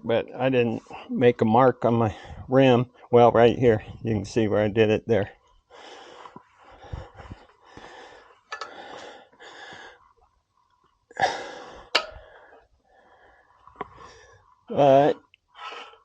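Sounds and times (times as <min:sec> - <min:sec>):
man breathing hard: 0:02.1 - 0:02.5, 0:05.7 - 0:10.2, 0:11.2 - 0:14.4, 0:15.6 - 0:16.0.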